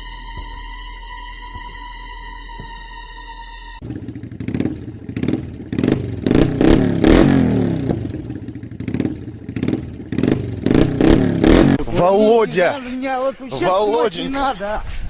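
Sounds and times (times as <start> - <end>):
engine revving: 3.8 - 11.9.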